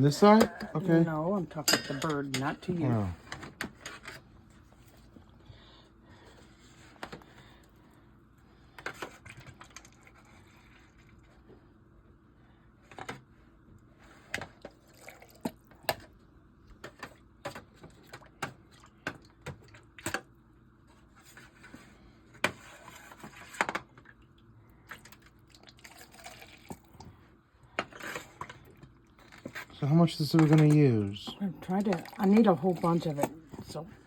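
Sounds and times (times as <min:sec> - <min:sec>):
liquid pouring and dripping: 0:25.2 - 0:27.0, 0:31.6 - 0:33.0.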